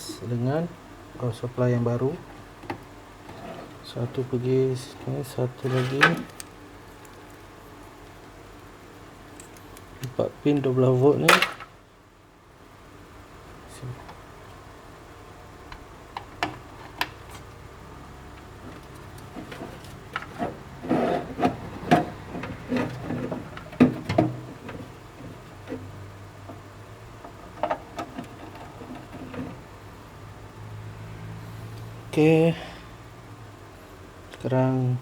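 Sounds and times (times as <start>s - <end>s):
rattling handling: 5.0s - 6.5s.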